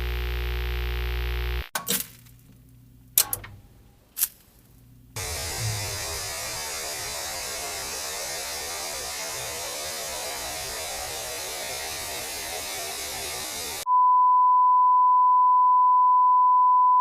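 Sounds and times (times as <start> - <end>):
static hiss: 0.0 - 1.7, 5.2 - 13.8
low hum: 4.9 - 13.8.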